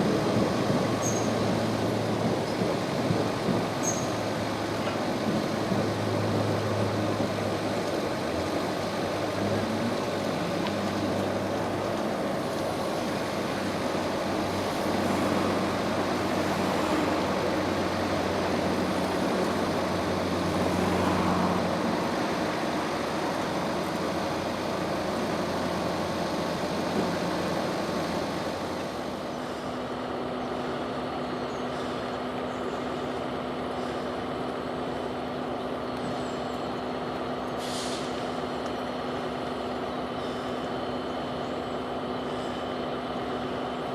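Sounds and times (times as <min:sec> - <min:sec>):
train rumbling: 0:00.0 - 0:43.9
short hiss: 0:37.6 - 0:38.2.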